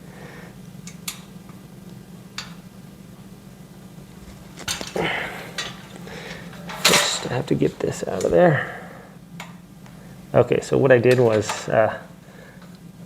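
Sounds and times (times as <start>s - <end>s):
low hum: 0.0s - 13.0s
metal clatter: 4.6s - 7.5s
metal shelf parts clinking: 4.6s - 8.4s, 11.1s - 11.8s.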